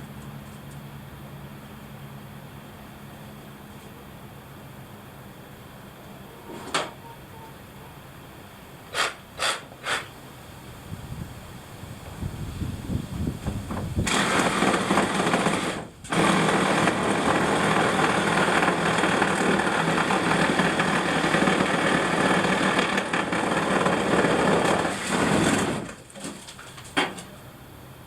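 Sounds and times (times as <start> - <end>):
electric power saw cutting wood: 14.0 - 26.0.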